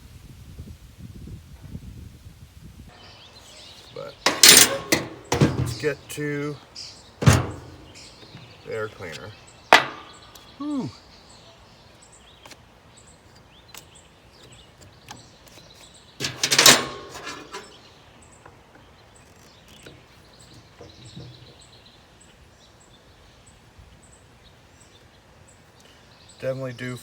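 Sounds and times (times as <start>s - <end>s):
faint high chirping: 2.9s - 12.0s.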